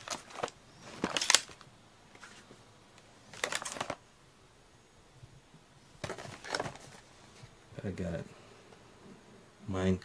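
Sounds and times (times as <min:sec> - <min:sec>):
packaging rustling and clattering: 0:00.0 - 0:01.6, 0:03.3 - 0:04.0, 0:06.0 - 0:07.1.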